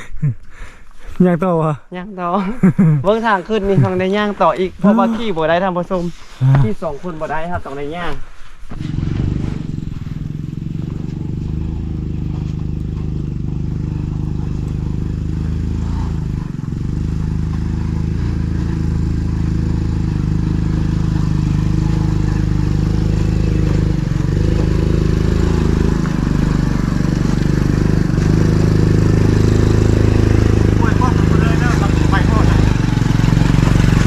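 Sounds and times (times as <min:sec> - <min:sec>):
motorcycle engine under load: 0:08.6 - 0:34.0.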